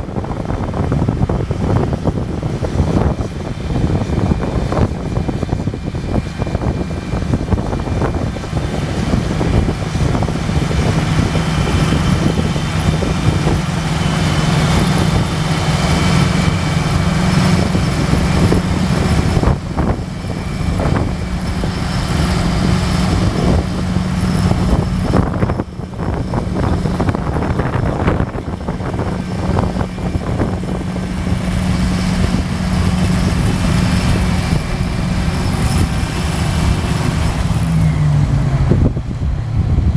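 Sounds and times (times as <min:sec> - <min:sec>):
tractor diesel engine under load: 0:00.0 - 0:39.9.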